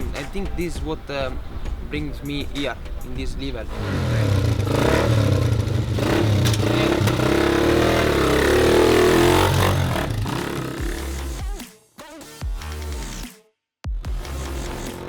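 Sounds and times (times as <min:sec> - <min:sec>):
motorcycle engine revving: 0:03.6 - 0:11.6.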